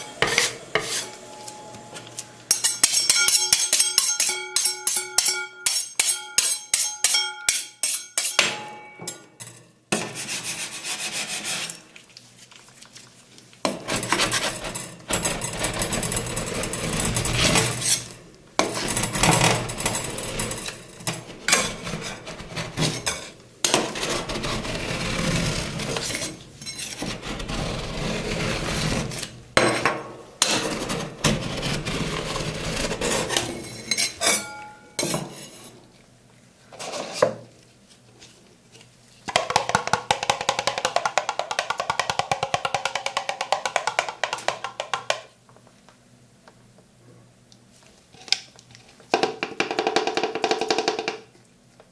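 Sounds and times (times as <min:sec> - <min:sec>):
metal spatulas scraping steel plate: 0:00.0 - 0:09.2, 0:10.0 - 0:11.9, 0:13.8 - 0:29.8, 0:30.4 - 0:35.8, 0:36.8 - 0:37.4
metal taps ringing plate: 0:02.5 - 0:09.3.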